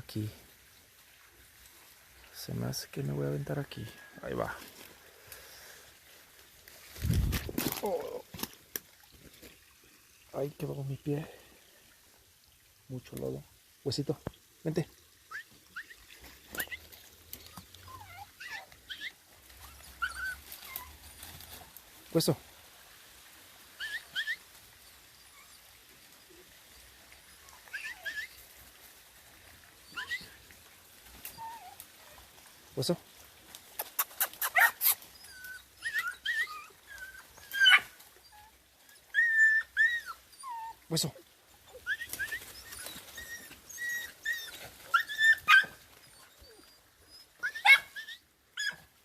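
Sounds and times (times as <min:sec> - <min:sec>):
dog whining: 0:17.4 - 0:21.2, 0:27.4 - 0:28.4, 0:29.8 - 0:30.4, 0:34.2 - 0:40.8, 0:41.7 - 0:48.8.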